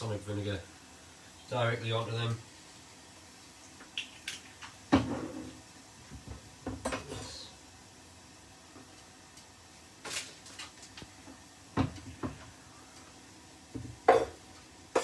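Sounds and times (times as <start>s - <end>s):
kitchen knocks and clunks: 4.9s - 7.4s, 11.7s - 12.5s, 13.7s - 15.0s.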